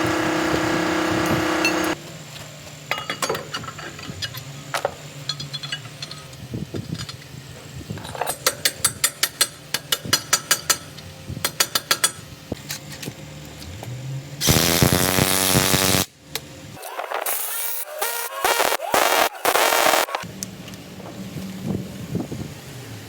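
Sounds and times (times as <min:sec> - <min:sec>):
power tool running: 0:00.0 - 0:02.0, 0:14.4 - 0:16.1, 0:17.2 - 0:20.2.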